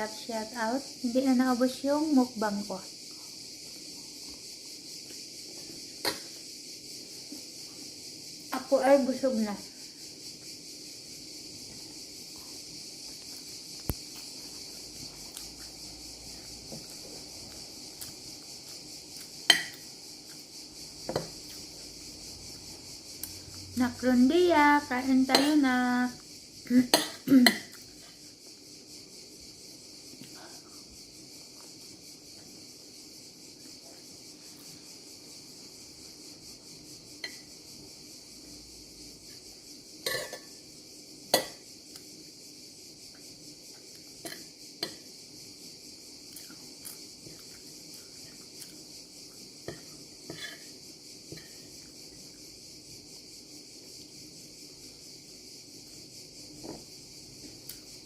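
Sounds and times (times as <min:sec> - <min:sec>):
crickets chirring: 0:00.0 - 0:58.0.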